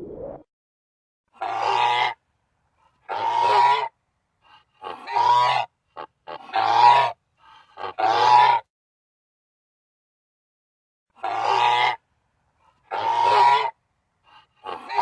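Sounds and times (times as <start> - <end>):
goose honking: 3.1 - 3.9, 4.5 - 8.6, 11.2 - 12.0, 12.9 - 13.7, 14.3 - 15.0.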